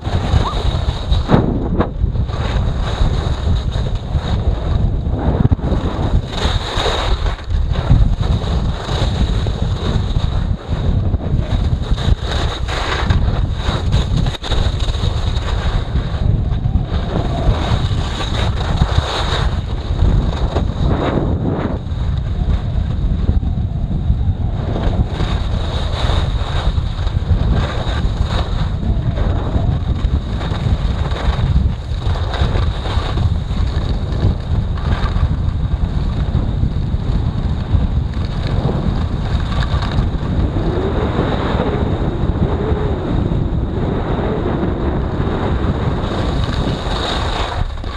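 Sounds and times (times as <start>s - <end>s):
wind buffeting microphone: 0.0s - 47.9s.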